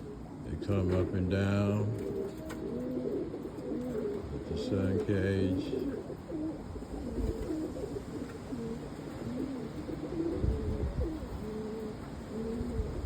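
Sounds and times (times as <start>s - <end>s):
pigeons cooing: 0.0s - 13.0s
wind buffeting microphone: 6.6s - 8.2s, 9.2s - 13.0s.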